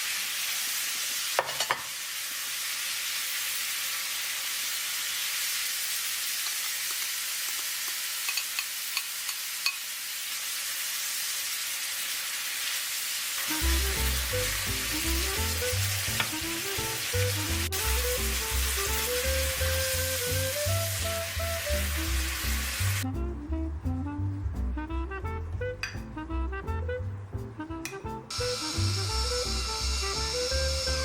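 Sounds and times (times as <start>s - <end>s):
food sizzling in a frying pan: 0.0s - 23.0s, 28.3s - 31.0s
background music with bass line: 13.5s - 31.0s.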